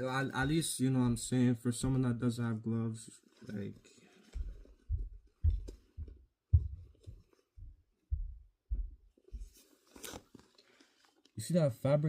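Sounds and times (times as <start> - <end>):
muffled low thumps: 4.4 - 9.5.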